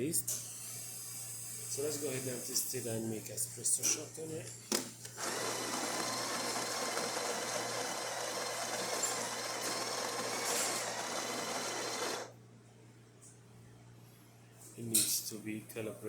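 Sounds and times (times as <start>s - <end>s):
coffee grinder grinding beans: 5.1s - 12.3s.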